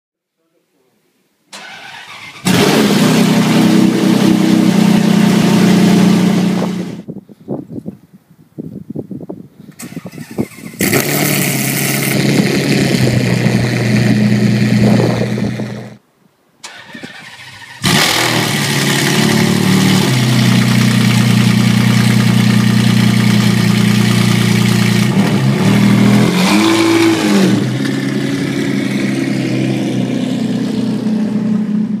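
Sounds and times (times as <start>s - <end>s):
sports car engine starting: 1.5s - 7.0s, 9.7s - 16.0s, 16.6s - 32.0s
engine revving: 1.6s - 7.0s, 9.8s - 16.0s, 16.7s - 32.0s
sports car engine idling: 18.6s - 26.1s.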